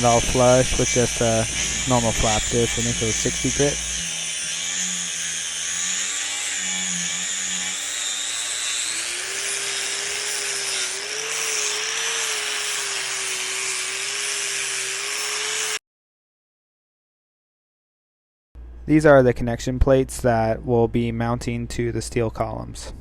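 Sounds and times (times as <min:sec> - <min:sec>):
angle grinder grinding steel: 0:00.0 - 0:15.8.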